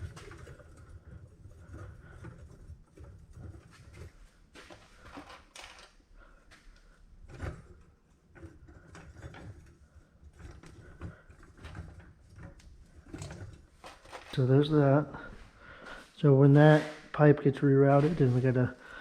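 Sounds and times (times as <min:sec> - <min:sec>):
hands knocking clicking and rustling: 0:00.0 - 0:14.8.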